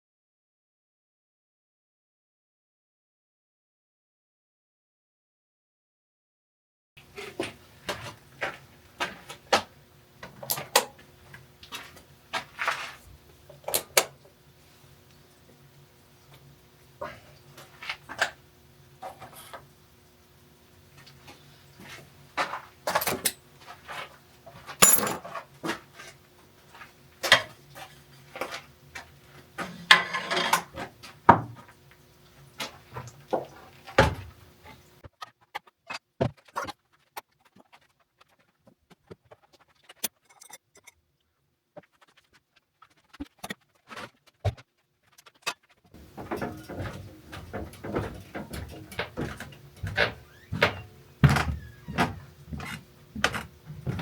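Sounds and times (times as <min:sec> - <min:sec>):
hard objects clinking and rattling: 0:24.8 - 0:25.4, 0:39.8 - 0:41.0.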